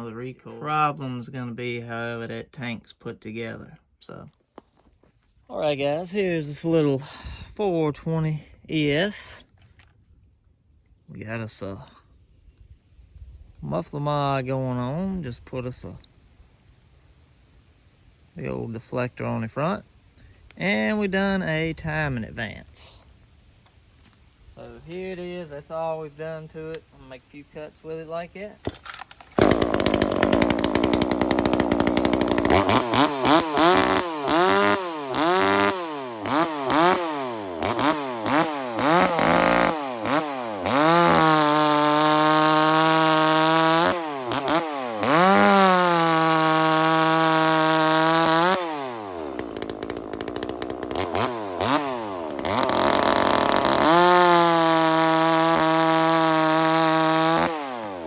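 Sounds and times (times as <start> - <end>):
chainsaw revving: 28.7 - 58.0.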